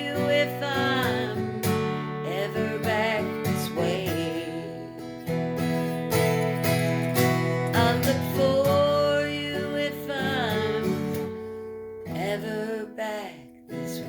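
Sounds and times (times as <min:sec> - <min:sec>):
acoustic guitar strumming: 0:00.0 - 0:14.0.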